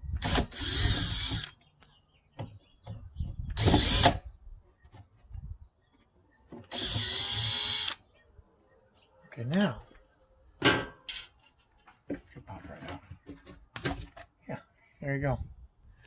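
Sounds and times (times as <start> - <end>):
power drill running: 0.3 - 1.5, 3.6 - 4.2, 6.7 - 8.0.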